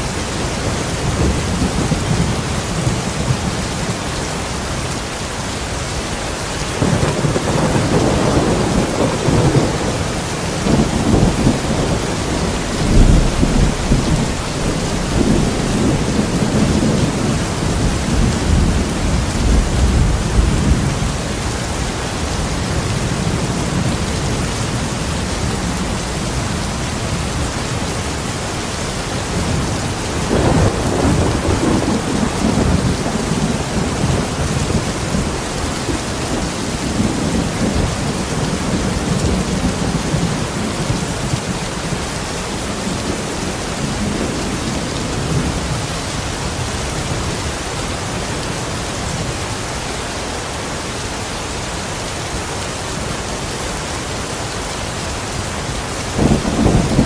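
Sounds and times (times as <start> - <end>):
low rolling thunder: 0.0 - 4.1, 6.7 - 27.8, 29.2 - 47.6, 56.1 - 57.0
steady rain: 0.0 - 57.0.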